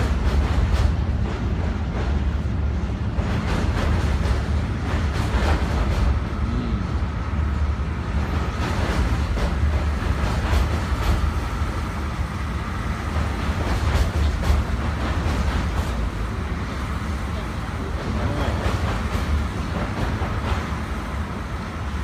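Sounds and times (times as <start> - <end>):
train rumbling on rails: 0.0 - 22.0
wheels clicking over rail joints: 13.0 - 22.0.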